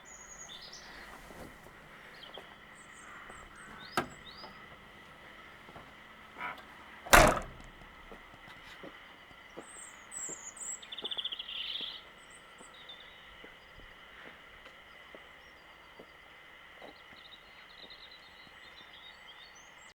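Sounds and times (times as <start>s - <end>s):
birds chirping: 0.0s - 8.3s.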